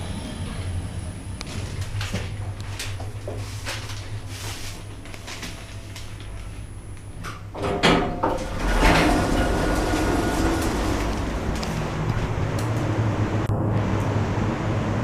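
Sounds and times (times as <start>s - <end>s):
lift running rumble: 0.0s - 15.0s
lift doors sliding: 7.4s - 13.5s.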